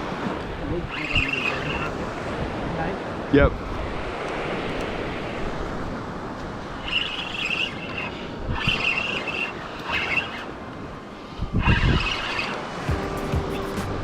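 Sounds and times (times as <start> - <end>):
surf washing on beach: 0.0 - 13.2
wind on microphone: 0.0 - 14.0
short high-pitched squeals: 0.8 - 2.0, 6.8 - 10.6, 11.6 - 12.8.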